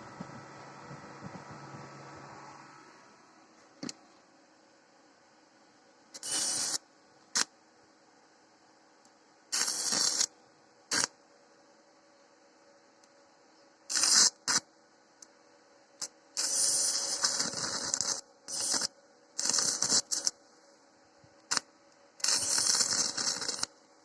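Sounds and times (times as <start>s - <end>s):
faint transformer whine: 0.0s - 24.0s
welding arc crackling: 9.6s - 10.3s, 13.9s - 14.6s, 16.4s - 20.3s, 22.2s - 23.7s.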